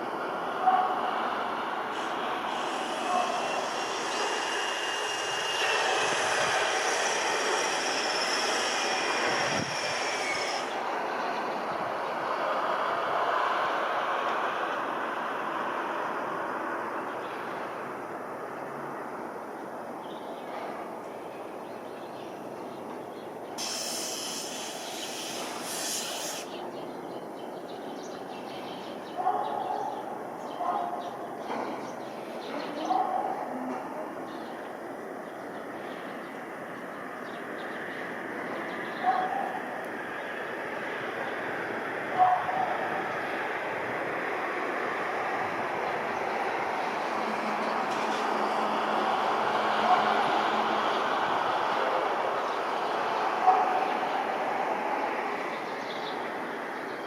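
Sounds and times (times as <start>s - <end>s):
jet engines rumbling: 0.0s - 18.8s
high whine tones: 1.9s - 10.8s
loud hiss: 1.9s - 10.9s, 23.6s - 26.6s.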